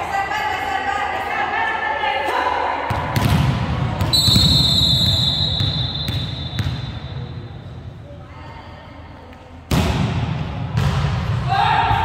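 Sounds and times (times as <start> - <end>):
referee's whistle long note: 4.1 - 6.6.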